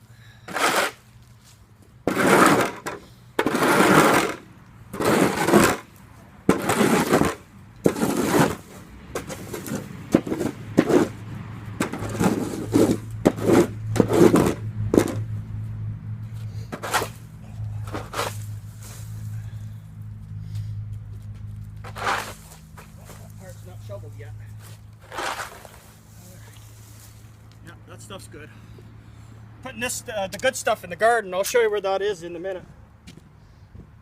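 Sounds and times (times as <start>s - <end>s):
shovel scraping on concrete: 0.5s - 11.2s, 11.8s - 15.2s, 16.5s - 19.3s, 21.8s - 24.0s, 24.6s - 27.2s.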